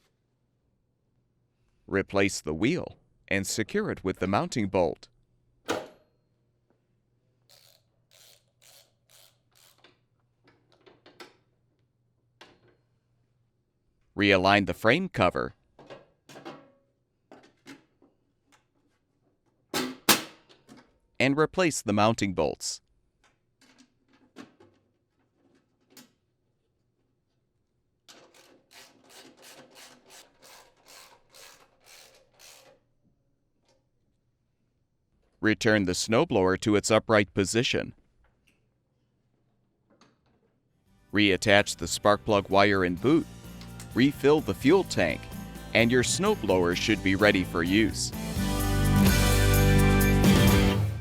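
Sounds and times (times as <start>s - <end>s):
ratchet pawl clicking: 7.5s - 10.0s, 28.3s - 32.8s.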